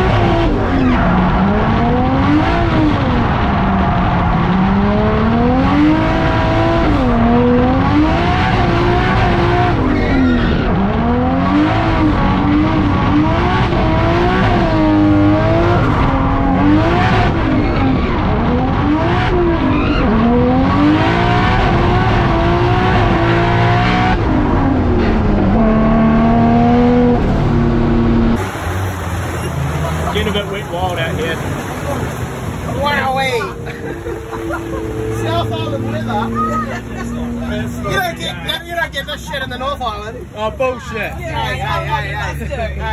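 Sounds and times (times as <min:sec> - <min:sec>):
car engine revving: 0:00.0 - 0:42.9
tyre squeal: 0:19.6 - 0:20.2.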